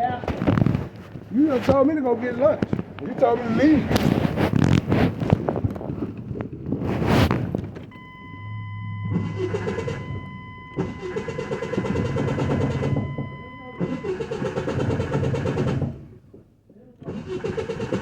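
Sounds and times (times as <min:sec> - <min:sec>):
starter motor grinding: 0:07.6 - 0:16.2, 0:17.0 - 0:18.0
high-pitched electronic tone: 0:08.0 - 0:14.4.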